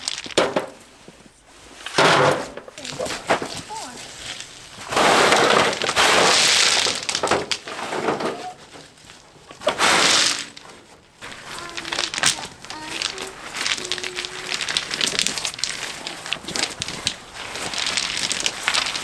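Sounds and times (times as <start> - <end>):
stones landing with knocks: 0.0 - 0.8, 1.8 - 8.4, 11.2 - 19.0
rocks clattering and grinding: 0.0 - 19.0.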